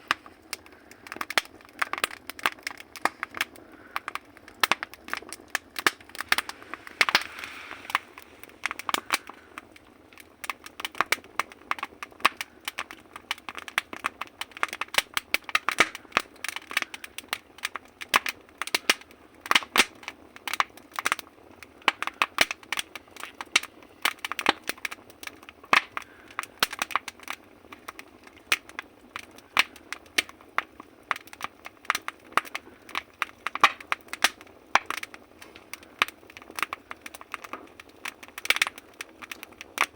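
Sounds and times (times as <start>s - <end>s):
soft hiss of flame: 0.0s - 11.0s
firewood crackling and popping: 0.0s - 39.9s.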